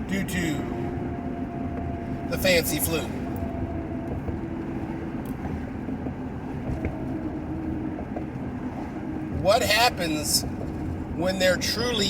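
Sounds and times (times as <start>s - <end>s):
car road and engine noise: 0.0s - 12.0s.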